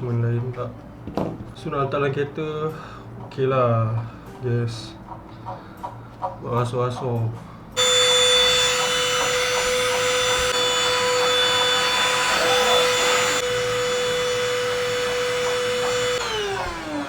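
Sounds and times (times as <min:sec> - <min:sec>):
handheld vacuum cleaner running: 0:07.8 - 0:17.0
motor spinning down: 0:07.8 - 0:17.0.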